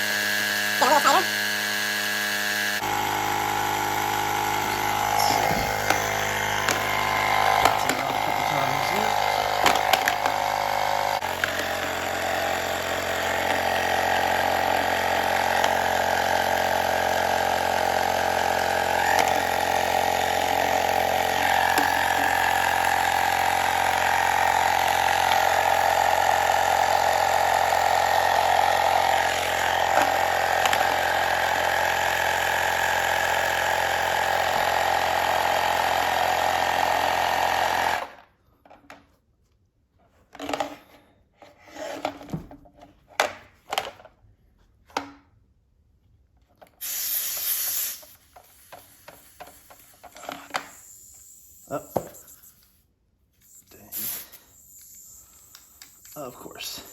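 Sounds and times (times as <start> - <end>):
electric tire pump running: 0.0 - 38.7, 41.7 - 44.1, 46.6 - 56.9.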